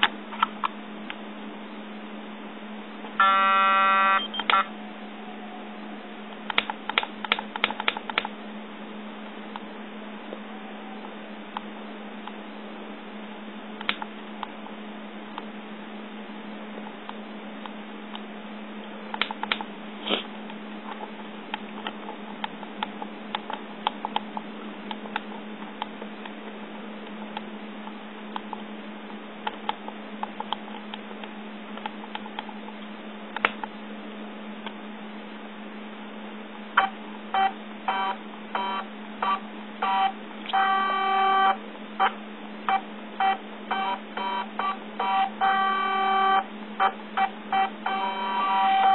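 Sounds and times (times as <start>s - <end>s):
steady low hum: 0.0s - 48.9s
short electronic beeps: 3.2s - 4.7s, 36.8s - 48.9s.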